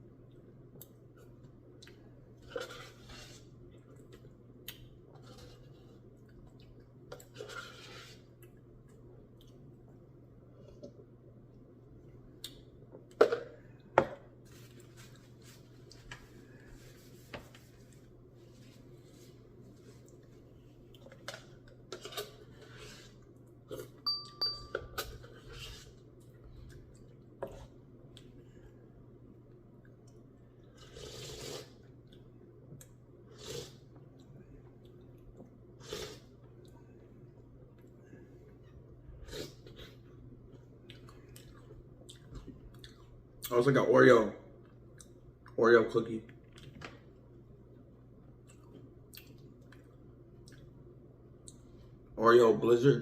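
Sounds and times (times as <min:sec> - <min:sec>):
steady low hum: 0:00.0 - 0:53.0
person chewing: 0:00.2 - 0:10.0, 0:29.7 - 0:38.6, 0:39.2 - 0:43.5, 0:44.6 - 0:45.6, 0:47.6 - 0:51.7
short ringing tone: 0:24.0 - 0:25.2.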